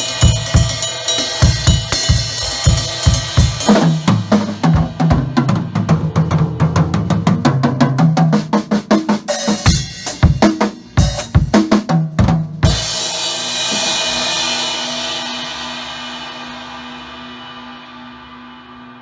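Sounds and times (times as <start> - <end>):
rapid pitched drum strokes: 0.0 - 19.0
bass drum hits: 3.4 - 8.3.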